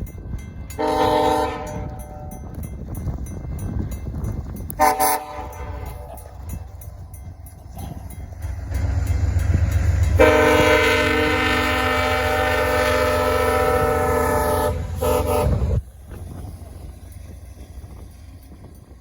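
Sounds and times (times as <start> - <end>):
low rumble of train: 0.0 - 19.0
locomotive air horn blast: 0.8 - 2.0, 4.8 - 6.1, 10.2 - 15.8.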